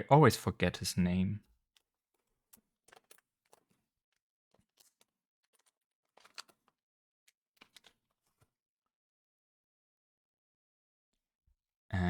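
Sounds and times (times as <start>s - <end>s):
trading cards clicking and rustling: 2.2s - 3.8s, 4.5s - 6.8s, 7.6s - 8.4s.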